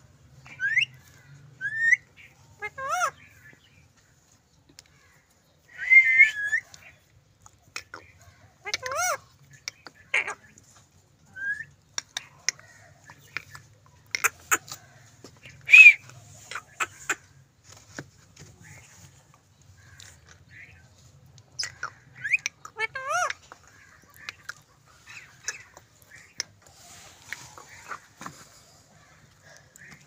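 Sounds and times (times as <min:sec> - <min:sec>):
parrot whistling and calling: 0:00.5 - 0:01.0, 0:01.6 - 0:03.2, 0:05.7 - 0:06.7, 0:15.6 - 0:16.9.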